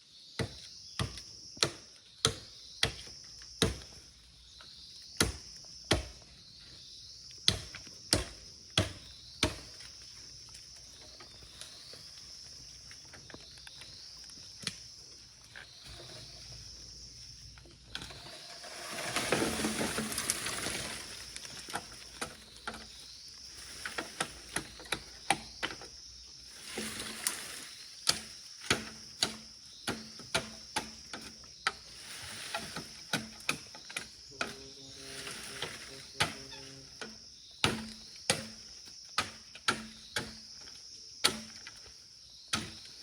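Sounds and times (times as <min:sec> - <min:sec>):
rustling noise: 0:18.1 - 0:22.3.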